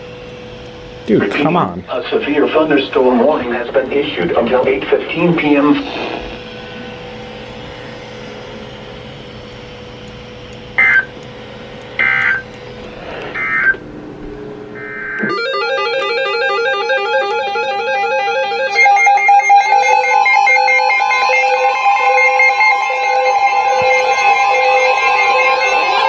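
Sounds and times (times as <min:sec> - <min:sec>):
steady hum and hiss: 0:00.0 - 0:15.3
two-tone data bursts: 0:10.8 - 0:11.2, 0:12.0 - 0:13.8, 0:14.8 - 0:26.0
music with plucked notes: 0:15.2 - 0:22.2.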